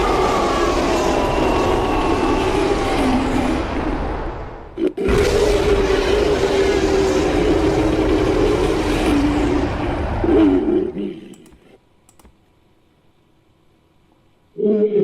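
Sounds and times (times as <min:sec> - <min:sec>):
creature roar: 0:00.0 - 0:04.0, 0:04.8 - 0:11.3
faint clicks: 0:11.3 - 0:12.5.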